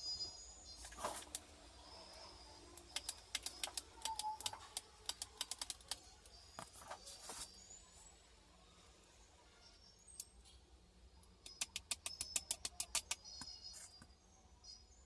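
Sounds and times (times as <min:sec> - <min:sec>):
tools clicking and tapping: 0:02.8 - 0:06.8, 0:11.2 - 0:14.1.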